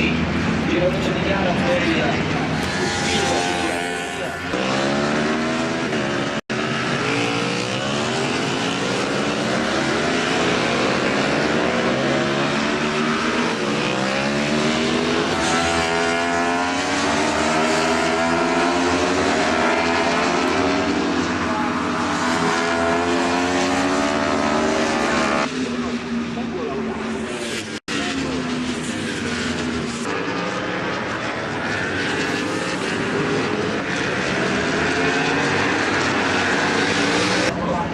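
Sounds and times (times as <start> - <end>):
racing motorcycles revving: 0.0 - 37.9.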